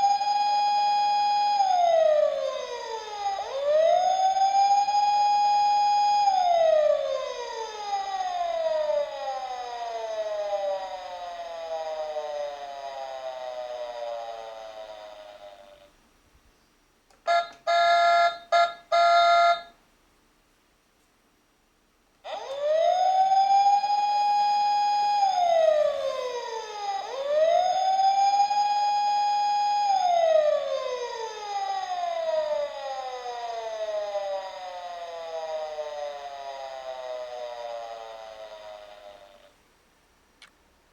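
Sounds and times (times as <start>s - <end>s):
toy siren wailing: 0.0s - 15.9s, 17.3s - 19.7s, 22.3s - 39.5s
short electronic beeps: 17.3s - 19.7s.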